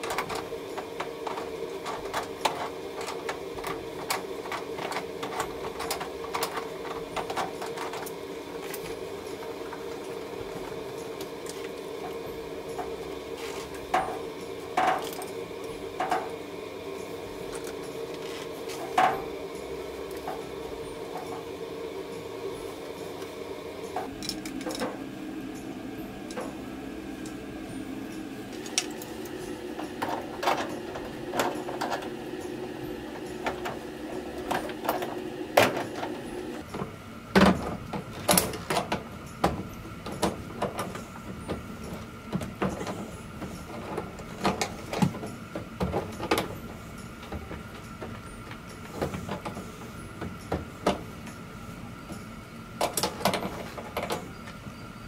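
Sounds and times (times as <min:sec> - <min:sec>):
steady background hum: 0:00.0 - 0:55.0
hand tools clicking on metal: 0:23.9 - 0:25.0, 0:28.1 - 0:36.7.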